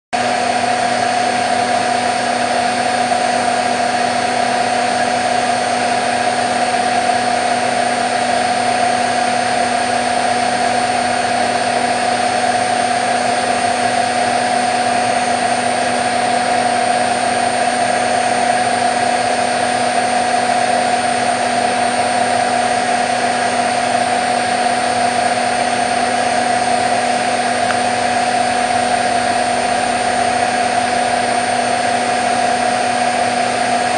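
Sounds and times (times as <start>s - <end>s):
washing machine spinning: 0.2s - 33.9s.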